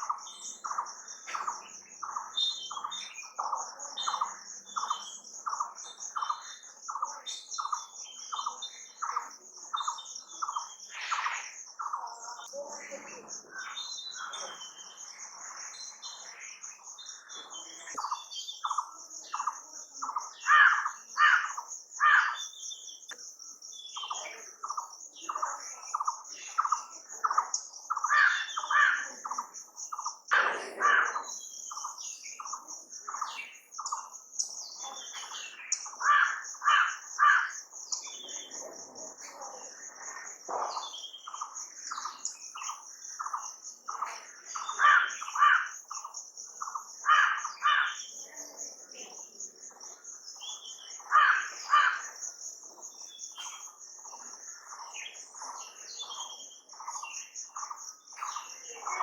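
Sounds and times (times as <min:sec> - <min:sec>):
birds calling: 0:00.0 - 0:59.0
high-pitched insect drone: 0:02.0 - 0:59.0.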